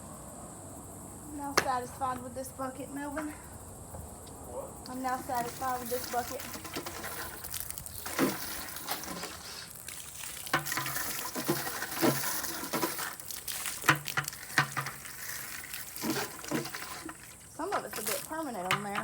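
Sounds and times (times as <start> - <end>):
water splashing in a bucket: 5.0 - 19.0
knocks and scrapes against bucket: 5.1 - 19.0.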